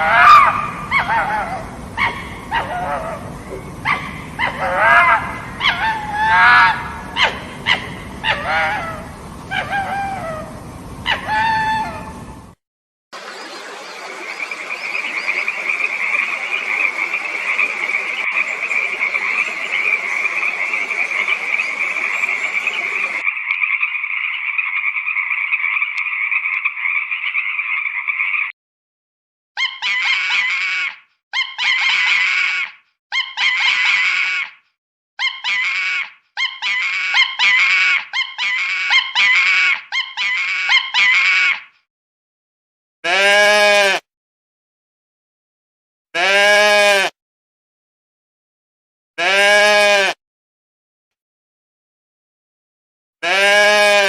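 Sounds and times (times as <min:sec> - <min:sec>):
frogs trilling chorus: 0:13.2 - 0:28.5
frog croaks: 0:14.3 - 0:28.5.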